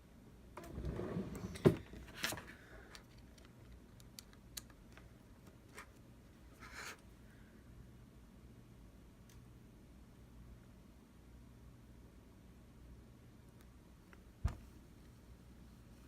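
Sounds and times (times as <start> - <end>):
small parts rustling and knocking: 1.8 - 6.1.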